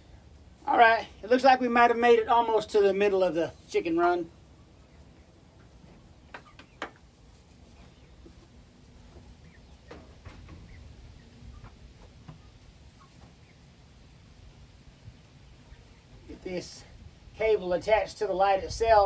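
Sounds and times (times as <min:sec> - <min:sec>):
faint chicken sounds: 0:03.5 - 0:17.3.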